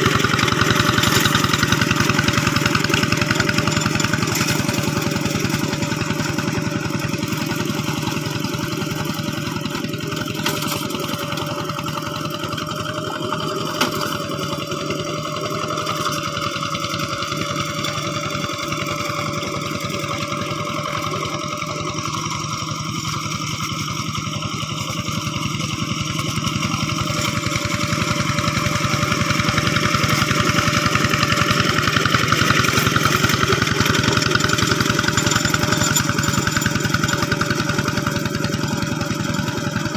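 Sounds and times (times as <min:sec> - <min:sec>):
diesel tractor engine running: 0:00.0 - 0:39.9.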